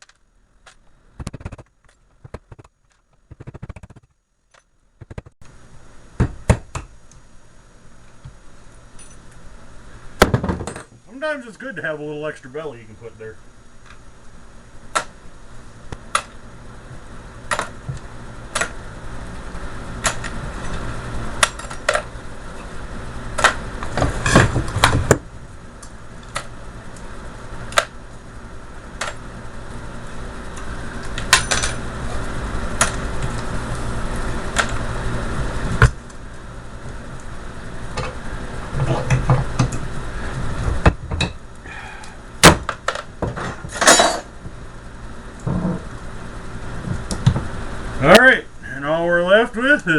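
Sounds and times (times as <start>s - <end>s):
metal clanks and knocks: 10.2s - 11.0s.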